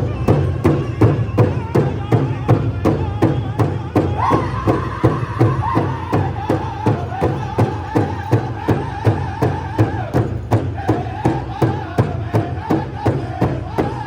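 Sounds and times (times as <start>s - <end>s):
big drum beating: 0.0s - 14.0s
high-pitched singing: 4.2s - 7.4s.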